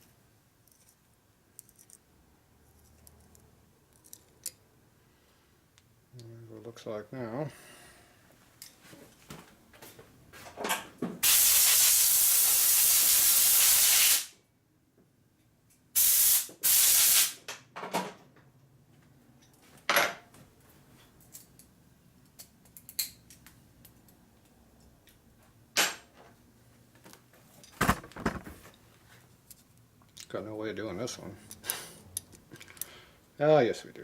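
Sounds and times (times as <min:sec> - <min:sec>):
pressurized spray hissing: 0:11.2 - 0:14.3, 0:16.0 - 0:17.4.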